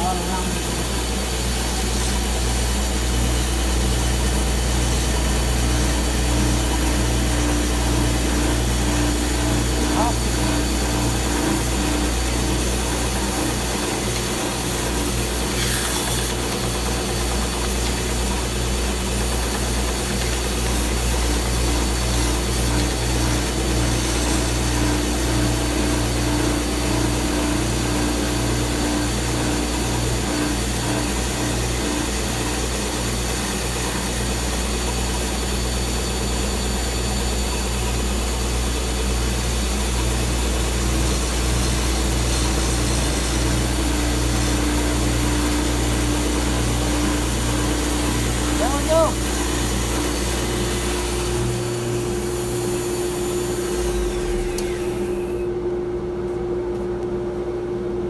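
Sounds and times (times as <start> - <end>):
power sander running: 0.0 - 55.6.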